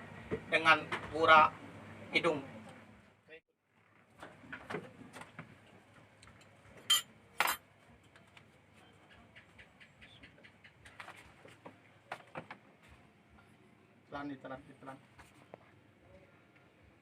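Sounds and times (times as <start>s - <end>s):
tableware clinking: 6.8s - 7.6s.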